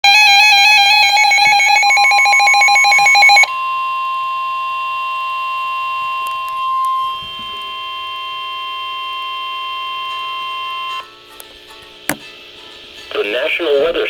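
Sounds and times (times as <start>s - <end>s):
steady loud alarm tone: 0.0s - 11.2s.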